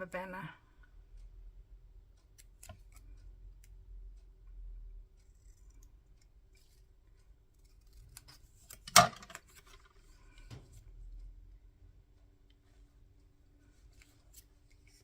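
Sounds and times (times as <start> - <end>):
scissors snipping paper: 5.2 - 9.7.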